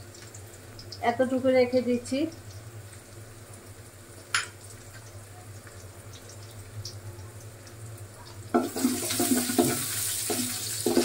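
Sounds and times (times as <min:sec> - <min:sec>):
oil frying quietly: 0:00.0 - 0:11.0
loud sizzling: 0:08.5 - 0:11.0.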